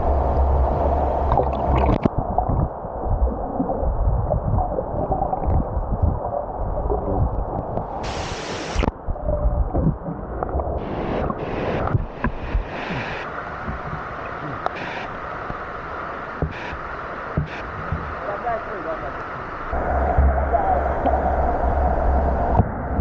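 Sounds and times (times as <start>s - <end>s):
muffled underwater gurgling and bubbling: 0.0s - 15.1s, 19.7s - 23.0s
rush of water: 0.0s - 23.0s
water splashes: 0.0s - 23.0s.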